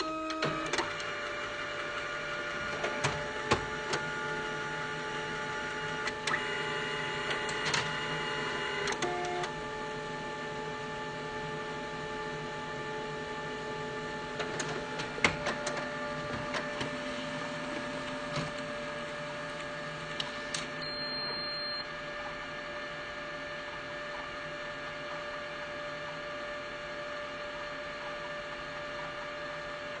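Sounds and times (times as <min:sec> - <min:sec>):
printer clicks and clunks: 0:00.0 - 0:04.4, 0:05.8 - 0:09.5, 0:14.3 - 0:18.8
printer whining and humming: 0:00.0 - 0:30.0.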